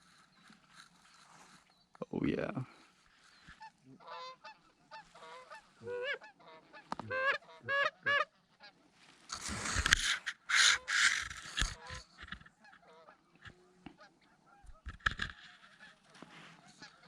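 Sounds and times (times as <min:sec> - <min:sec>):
goose honking: 0:03.5 - 0:08.8, 0:09.4 - 0:14.9, 0:15.6 - 0:17.0.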